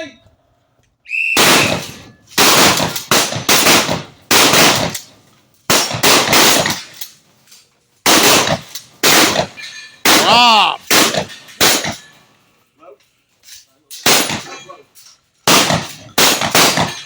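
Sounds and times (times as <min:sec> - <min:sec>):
shotgun shots echoing: 0:01.4 - 0:05.1, 0:05.7 - 0:07.0, 0:08.0 - 0:12.1, 0:14.0 - 0:14.6, 0:15.5 - 0:17.0.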